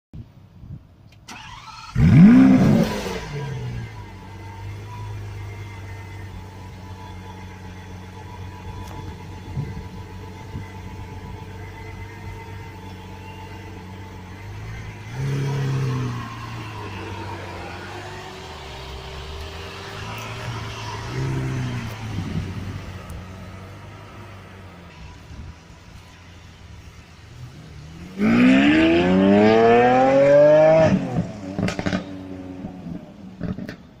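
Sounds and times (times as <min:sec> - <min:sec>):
car engine idling and revving: 0:00.2 - 0:34.0
exhaust crackles and pops: 0:30.8 - 0:34.0.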